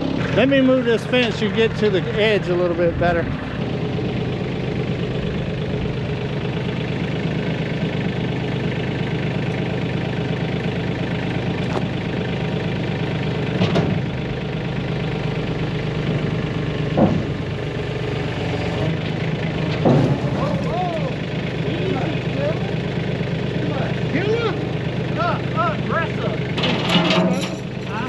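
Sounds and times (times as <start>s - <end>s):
tractor engine idling: 0.0s - 28.0s.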